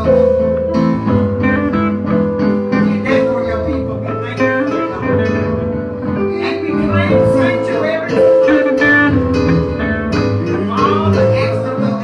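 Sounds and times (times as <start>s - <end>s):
gospel church band music: 0.0s - 12.0s
guitar: 0.0s - 12.0s.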